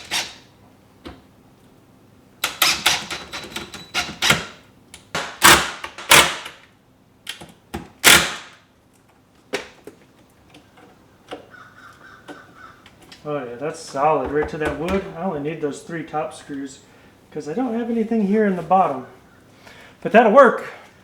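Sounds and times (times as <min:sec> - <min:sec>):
screws driven into wood: 0:00.0 - 0:00.4, 0:02.4 - 0:04.6, 0:05.2 - 0:06.6, 0:08.0 - 0:08.6.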